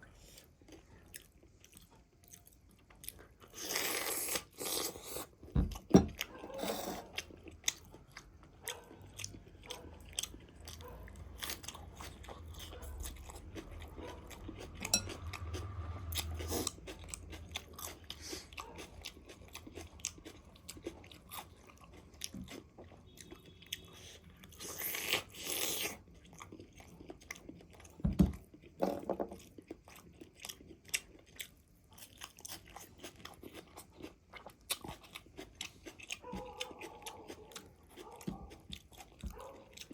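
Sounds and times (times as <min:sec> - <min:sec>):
crunchy chewing of fried chicken: 0:00.0 - 0:39.9.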